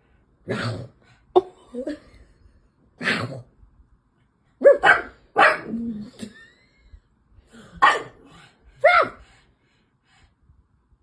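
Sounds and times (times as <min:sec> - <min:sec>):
dog barking: 0:04.6 - 0:05.8, 0:07.8 - 0:08.2, 0:08.8 - 0:09.2.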